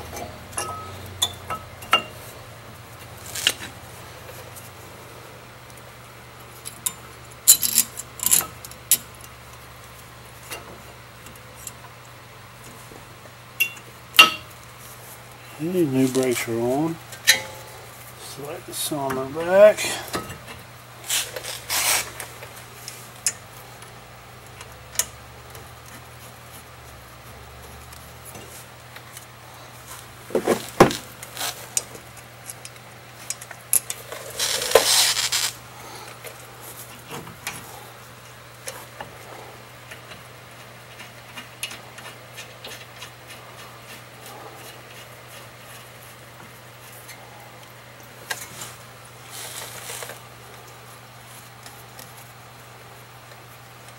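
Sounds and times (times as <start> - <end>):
metal brake parts clinking and scraping: 17.2 - 17.7
sharp metal clank: 17.3 - 17.6.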